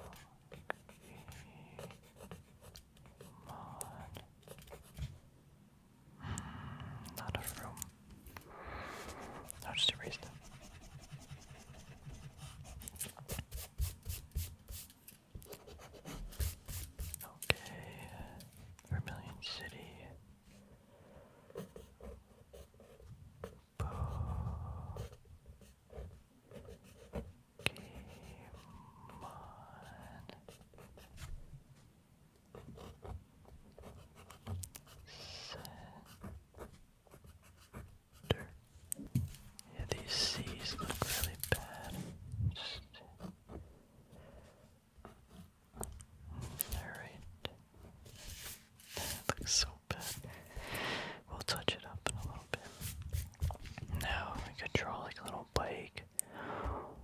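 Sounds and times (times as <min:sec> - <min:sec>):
pencil writing on paper: 0:00.0 - 0:05.1, 0:07.2 - 0:07.8, 0:09.0 - 0:18.5, 0:21.6 - 0:24.4, 0:25.0 - 0:31.4, 0:32.5 - 0:38.6, 0:39.7 - 0:42.1.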